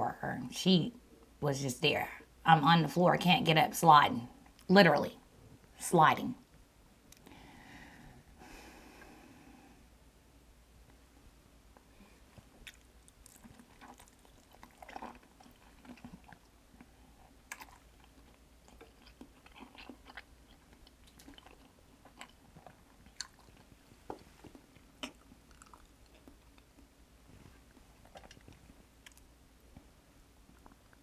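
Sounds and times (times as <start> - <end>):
chewing: 12.3 - 29.9, 30.5 - 31.0
mouth clicks and smacks: 12.4 - 16.4, 27.7 - 29.3.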